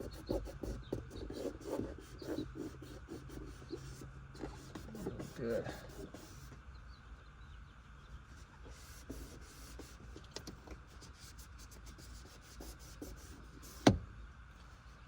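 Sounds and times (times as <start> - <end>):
cloth rubbing on car door trim: 0.0 - 6.6, 8.7 - 10.2, 10.9 - 14.0.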